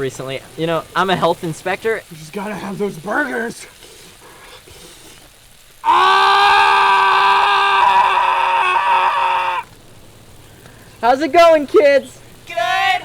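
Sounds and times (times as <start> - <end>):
person screaming: 5.8 - 9.7.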